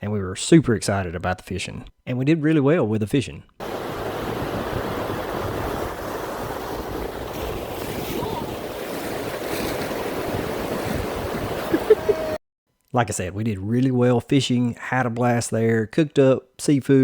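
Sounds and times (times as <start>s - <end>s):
surf breaking on beach: 3.6s - 12.4s
wind on microphone: 3.6s - 12.4s.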